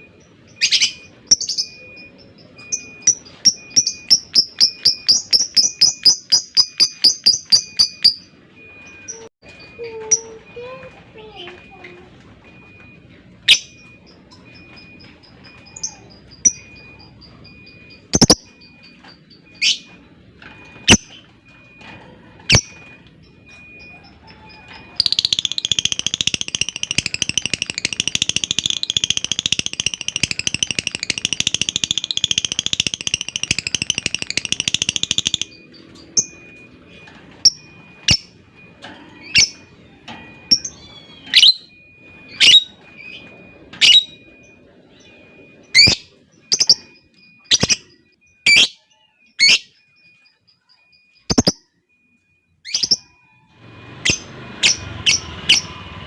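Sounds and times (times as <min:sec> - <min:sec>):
lovebird chirping and chattering: 0:00.3 - 0:08.2, 0:15.0 - 0:18.8, 0:24.9 - 0:36.4, 0:47.5 - 0:47.9, 0:51.2 - 0:51.6.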